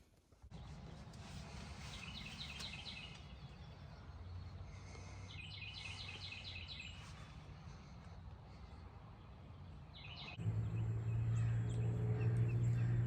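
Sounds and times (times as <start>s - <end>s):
low steady rumble: 7.3s - 13.0s.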